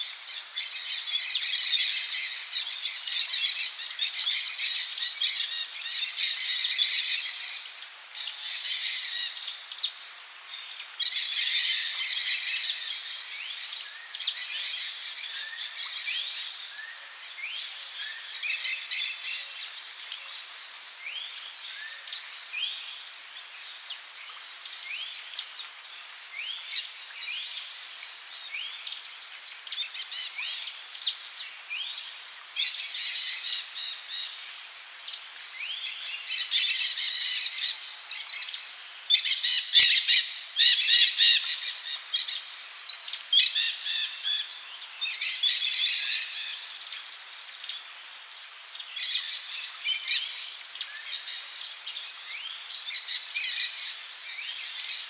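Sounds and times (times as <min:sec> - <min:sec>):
high insect drone: 0:00.0 - 0:55.0
birds calling and singing: 0:24.7 - 0:27.8, 0:35.6 - 0:55.0.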